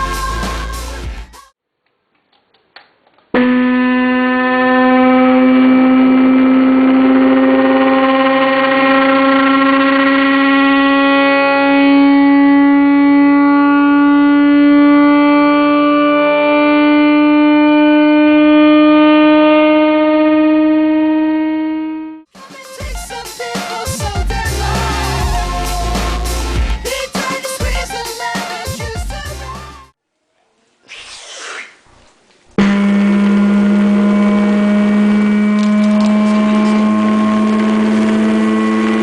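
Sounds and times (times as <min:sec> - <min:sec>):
buzzy test tone through subwoofer: 0:03.4 - 0:22.3, 0:24.2 - 0:26.9, 0:32.6 - 0:39.0.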